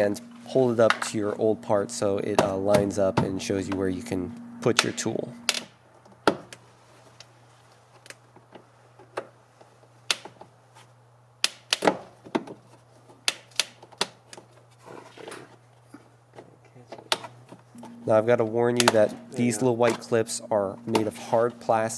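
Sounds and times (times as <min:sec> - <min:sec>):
low steady hum: 0:00.0 - 0:05.6, 0:17.8 - 0:21.9.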